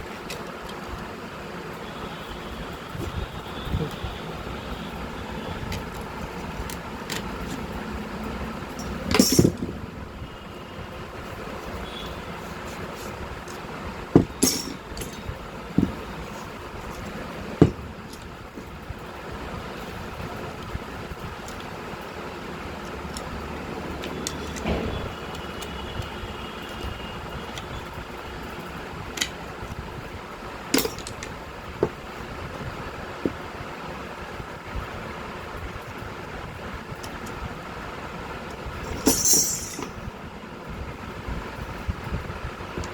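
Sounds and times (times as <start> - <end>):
steady background hiss: 0.0 - 42.9
steady low background noise: 0.0 - 42.9
metal tools knocking and clinking: 8.7 - 9.8, 13.5 - 18.7, 23.9 - 25.7, 30.7 - 32.0, 38.5 - 40.2.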